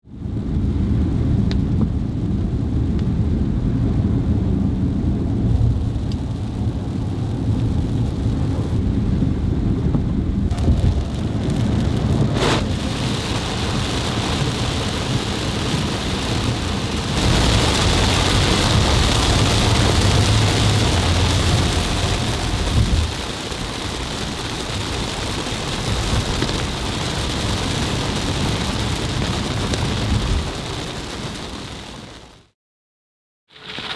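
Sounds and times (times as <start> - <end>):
deep rolling thunder: 0.3 - 26.6
heavy rain: 0.4 - 32.5.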